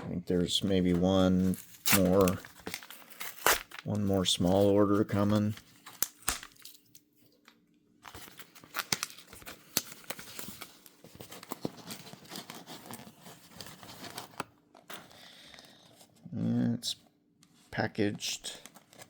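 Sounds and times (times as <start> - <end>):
packaging tearing and crinkling: 1.4 - 7.1, 8.0 - 14.4.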